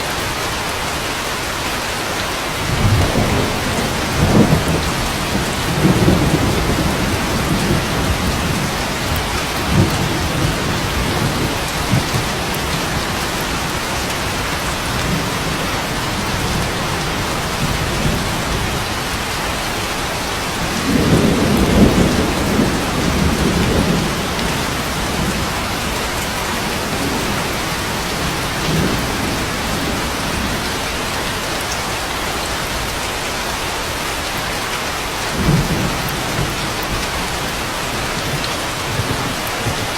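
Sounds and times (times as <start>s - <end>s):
steady rain: 0.0s - 39.9s
rolling thunder: 2.6s - 18.9s, 20.6s - 31.2s, 35.3s - 39.9s.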